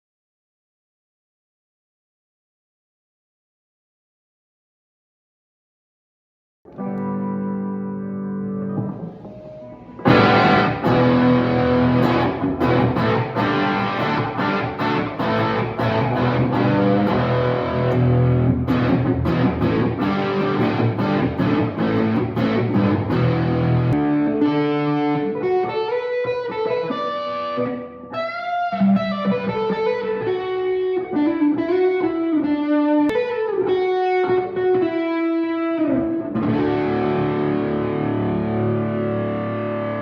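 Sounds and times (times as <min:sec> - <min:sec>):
distorted electric guitar: 0:06.7 - 0:40.0.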